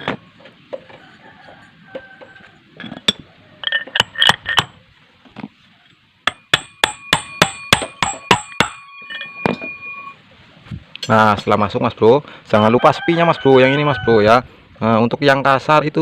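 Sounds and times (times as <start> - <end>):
hammer striking metal: 6.3 - 10.0.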